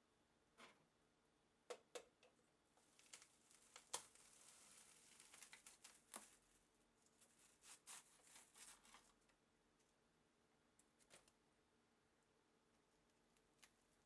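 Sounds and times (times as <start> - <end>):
soft crinkly rustle: 2.8 - 10.0.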